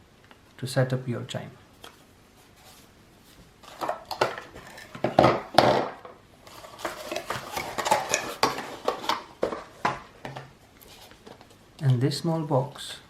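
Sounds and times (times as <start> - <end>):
boxes and packaging being handled: 1.8 - 12.0.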